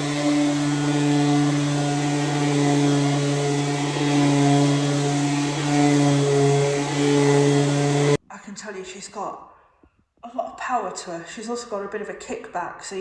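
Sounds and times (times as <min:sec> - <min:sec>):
electric sander motor hum: 0:00.0 - 0:08.2
sandpaper hissing on wood: 0:00.0 - 0:08.2.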